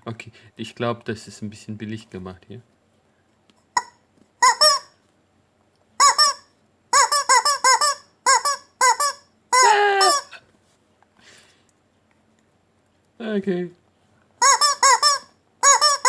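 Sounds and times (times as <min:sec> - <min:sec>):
rubber squeaky toy squeaking: 0:03.8 - 0:05.0, 0:06.0 - 0:10.4, 0:14.4 - 0:16.0.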